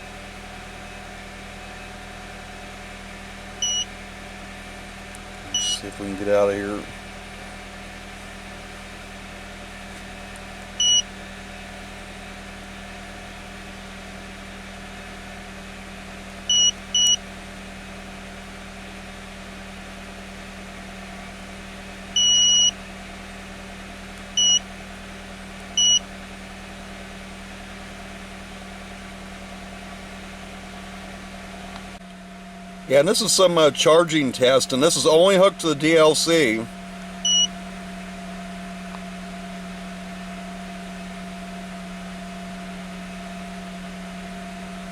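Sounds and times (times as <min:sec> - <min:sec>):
steady low hum: 0:00.0 - 0:15.0, 0:16.0 - 0:44.9
short high-pitched beeps: 0:03.6 - 0:03.9, 0:05.5 - 0:05.8, 0:10.8 - 0:11.0, 0:16.5 - 0:17.2, 0:22.2 - 0:22.7, 0:24.4 - 0:24.6, 0:25.8 - 0:26.0, 0:37.2 - 0:37.5.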